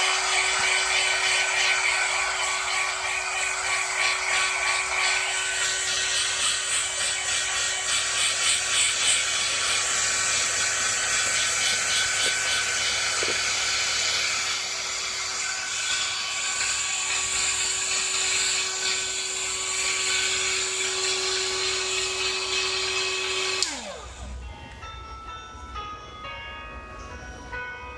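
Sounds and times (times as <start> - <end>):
hair dryer blowing: 0.0 - 24.4
music with bell-like tones: 24.0 - 27.9.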